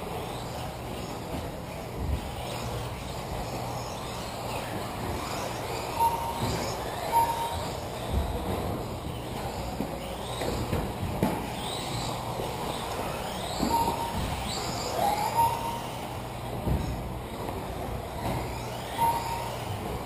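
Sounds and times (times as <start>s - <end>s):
electric motors whining: 0.0s - 20.0s
short steady beeps: 5.9s - 7.9s.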